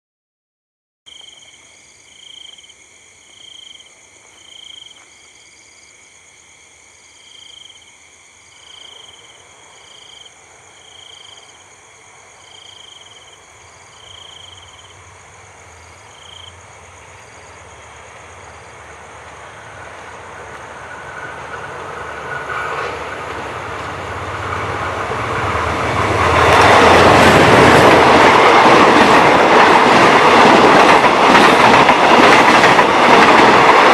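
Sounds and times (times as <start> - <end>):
diesel locomotive passing: 8.6 - 33.9.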